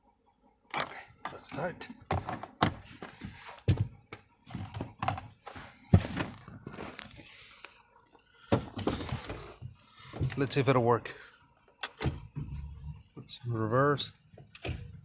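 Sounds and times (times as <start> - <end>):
handling knocks and thunks: 2.0 - 6.9.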